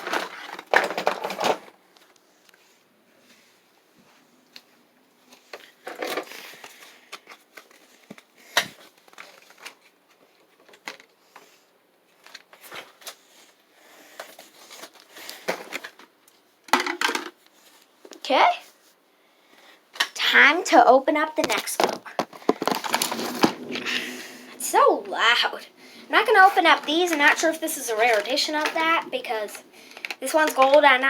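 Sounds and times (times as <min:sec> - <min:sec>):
plastic packaging crinkling: 0:05.4 - 0:10.9, 0:21.4 - 0:24.5, 0:25.2 - 0:31.0.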